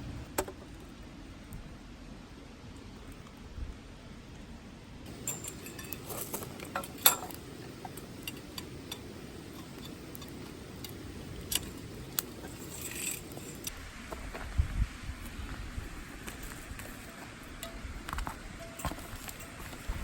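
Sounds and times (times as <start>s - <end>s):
tableware clinking: 5.1s - 13.7s.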